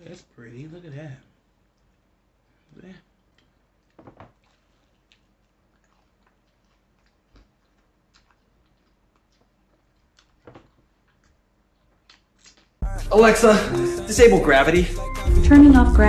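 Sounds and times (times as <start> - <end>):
chewing crunchy food: 3.2 - 12.8.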